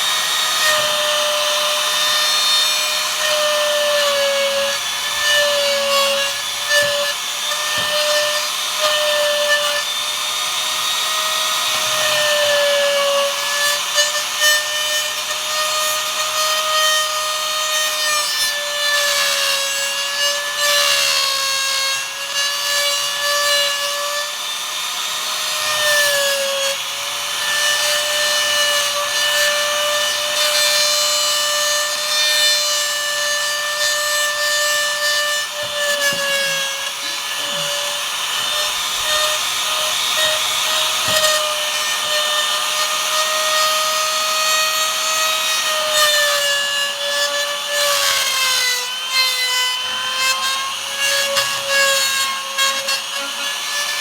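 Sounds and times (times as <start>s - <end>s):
router cutting wood: 0.0s - 54.0s.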